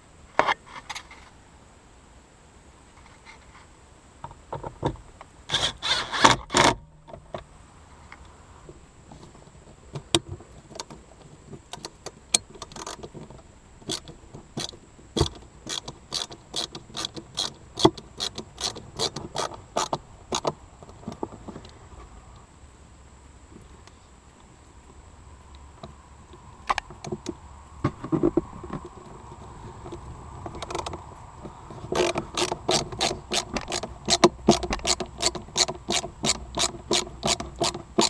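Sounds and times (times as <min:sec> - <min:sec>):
plastic parts clicking: 0:31.9 - 0:38.0.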